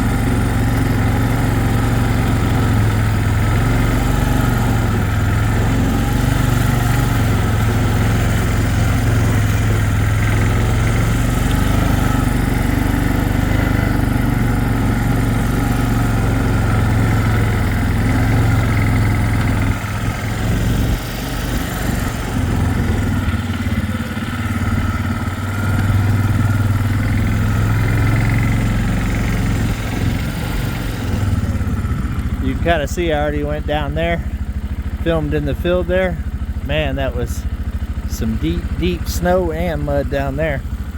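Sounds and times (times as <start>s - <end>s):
atv engine running: 0.0s - 40.9s.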